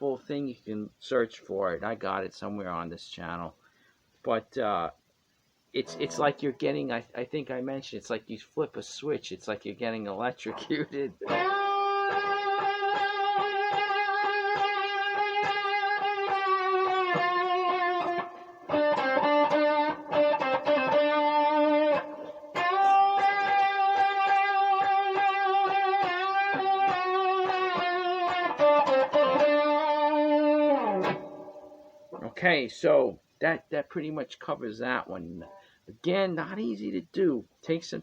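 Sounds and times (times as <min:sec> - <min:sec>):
blues guitar lick: 0:05.8 - 0:06.7, 0:10.4 - 0:32.4.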